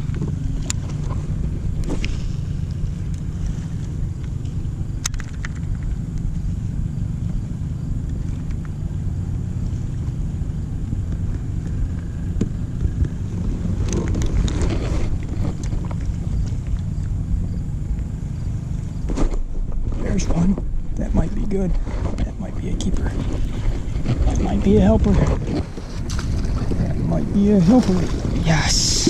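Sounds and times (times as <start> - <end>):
wind buffeting microphone: 0.0 - 29.0
sharp clicks: 5.0 - 6.3
rustling: 12.8 - 17.0, 18.4 - 29.0.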